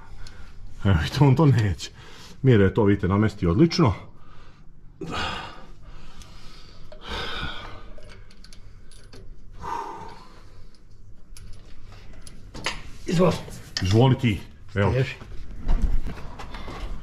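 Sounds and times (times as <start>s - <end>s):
low steady hum: 0.0s - 17.0s
metal tools clinking: 7.9s - 9.3s.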